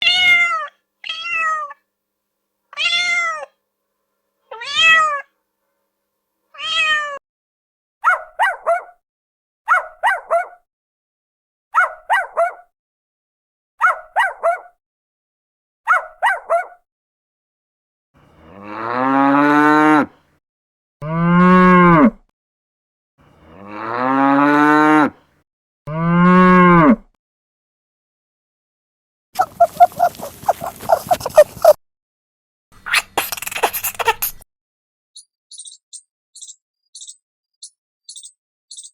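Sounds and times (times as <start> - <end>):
cat meowing: 0.0 - 1.8, 2.8 - 3.6, 4.5 - 5.3, 6.6 - 7.2, 29.4 - 31.8
cow mooing: 18.4 - 20.2, 23.4 - 25.2
quick short animal calls: 29.4 - 31.8, 32.8 - 34.4.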